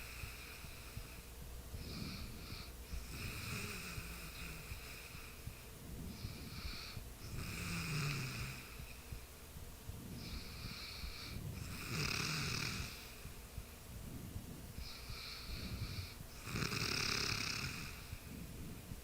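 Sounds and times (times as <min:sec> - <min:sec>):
person snoring: 0:01.8 - 0:05.4, 0:06.1 - 0:08.8, 0:10.1 - 0:13.1, 0:14.8 - 0:18.4.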